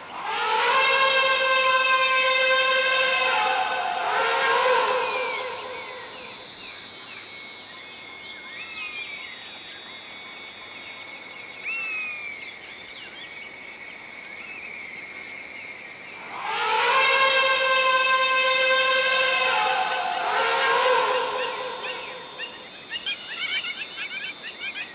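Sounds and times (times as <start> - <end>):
insects droning: 0.0 - 24.9
birds chirping: 16.2 - 23.6
bird call: 16.2 - 24.9.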